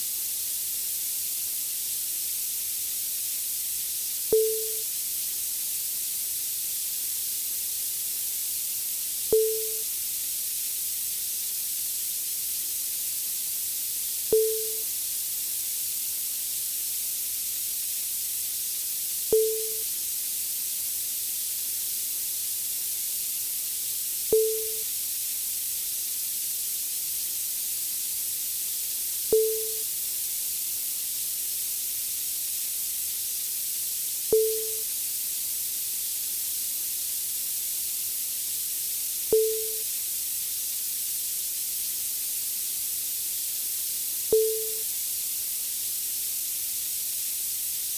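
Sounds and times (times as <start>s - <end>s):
high-pitched television hiss: 4.2s - 5.0s, 9.3s - 9.9s, 14.2s - 15.0s, 16.6s - 20.0s, 24.2s - 28.0s, 28.7s - 38.1s, 38.8s - 47.9s.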